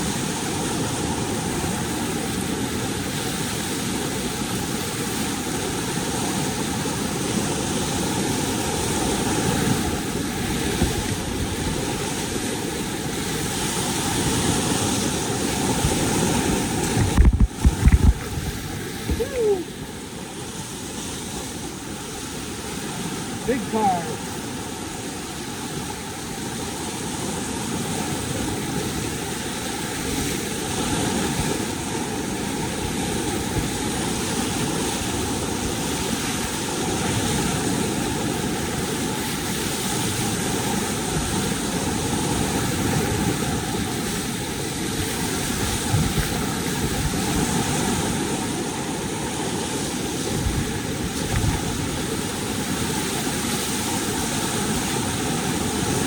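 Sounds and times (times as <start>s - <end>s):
river whitewater rushing: 0.0s - 56.0s.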